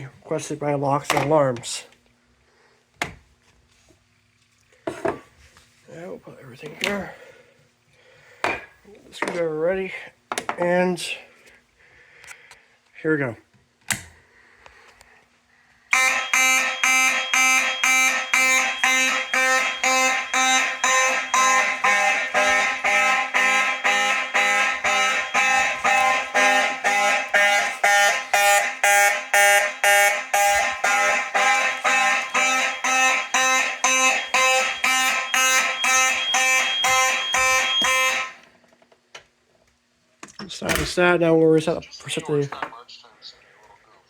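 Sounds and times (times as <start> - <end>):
fire alarm sounders pulsing: 15.9 - 38.4.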